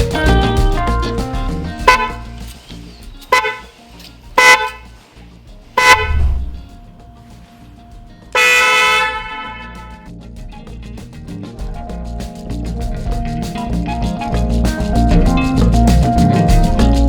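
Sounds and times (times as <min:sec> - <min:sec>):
car horn honking: 0:04.4 - 0:04.8, 0:05.8 - 0:06.1, 0:08.4 - 0:09.8.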